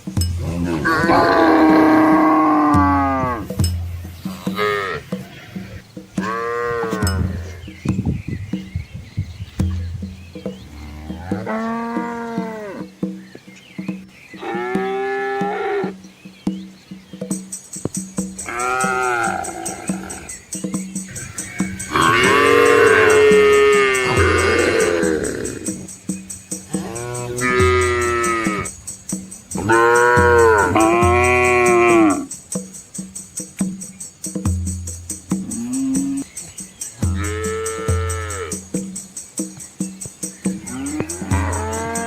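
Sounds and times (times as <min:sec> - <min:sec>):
background music with beat: 0:00.0 - 0:14.2, 0:15.4 - 0:42.0
cows mooing: 0:00.4 - 0:03.6, 0:04.3 - 0:07.9, 0:10.5 - 0:12.9, 0:14.4 - 0:16.0, 0:18.4 - 0:20.4, 0:21.1 - 0:26.0, 0:26.7 - 0:28.8, 0:29.6 - 0:32.3, 0:35.4 - 0:36.3, 0:37.0 - 0:38.6, 0:40.6 - 0:42.0.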